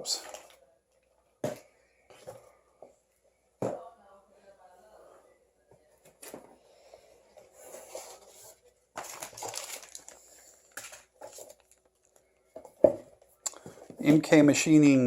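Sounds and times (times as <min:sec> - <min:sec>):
packaging rustling and crinkling: 0:07.5 - 0:12.2.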